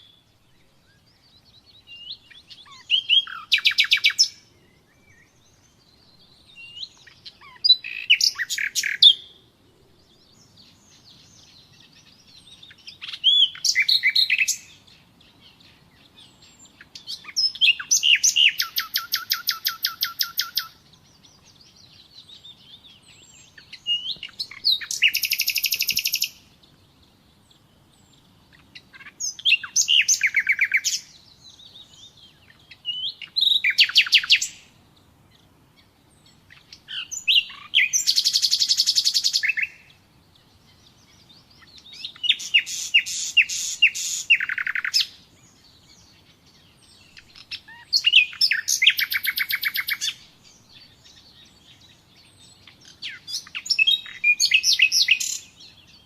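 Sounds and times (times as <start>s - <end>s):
nightingale singing: 0.0s - 56.0s.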